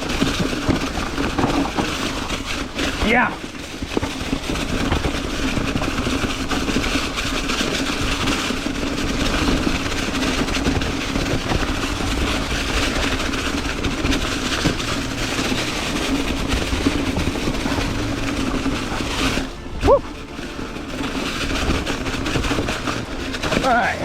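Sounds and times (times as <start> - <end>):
bike rattling: 0.0 - 24.0
tyres rolling over leaves and rock: 0.0 - 24.0.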